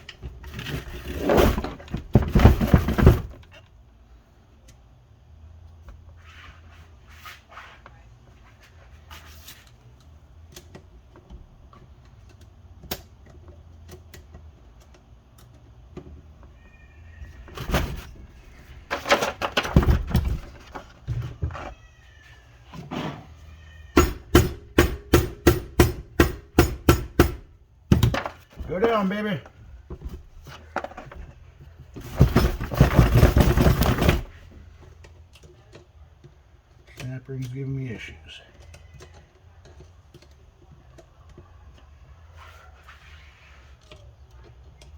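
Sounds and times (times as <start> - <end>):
metal parts clattering: 17.6 - 20.9, 32.0 - 34.5.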